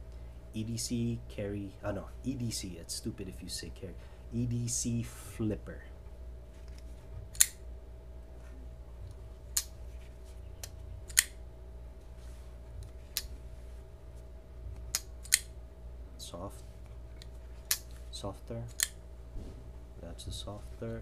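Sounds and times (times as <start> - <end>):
knife blade snapping open and shut: 7.3 - 7.6, 11.1 - 11.4, 14.9 - 15.5.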